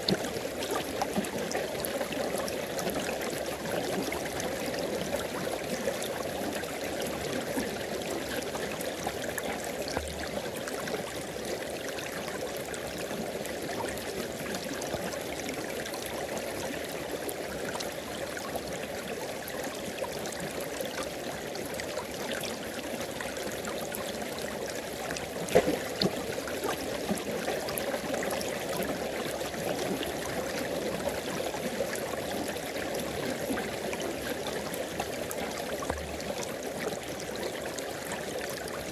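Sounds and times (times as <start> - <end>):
water splash: 25.5 - 26.2.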